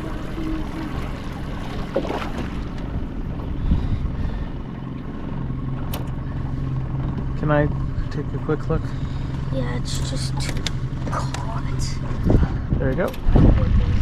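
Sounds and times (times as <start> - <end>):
outboard motor running: 0.0 - 14.0
wind on microphone: 12.1 - 14.0.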